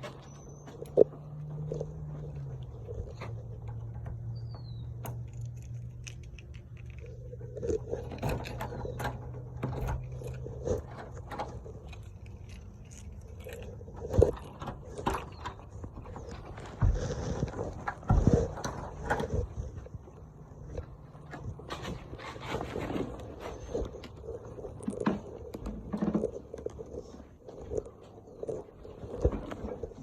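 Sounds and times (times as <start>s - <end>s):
small objects clicking and knocking: 0.0s - 19.9s
low hum: 0.0s - 30.0s.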